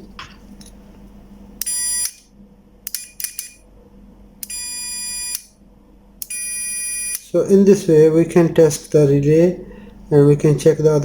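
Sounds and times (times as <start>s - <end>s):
multimeter continuity beeps: 1.6s - 2.3s, 2.9s - 3.6s, 4.4s - 5.6s, 6.2s - 7.3s.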